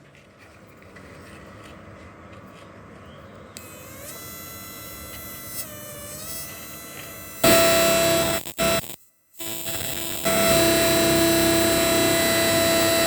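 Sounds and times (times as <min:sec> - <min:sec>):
buzzing whine shifting pitch: 0:03.6 - 0:13.0
inverter hiss: 0:03.6 - 0:13.0.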